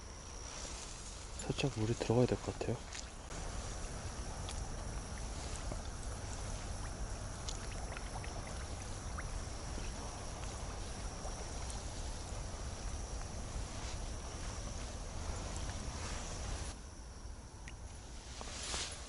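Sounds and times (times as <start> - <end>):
wind rumble on microphone: 3.1 - 16.8.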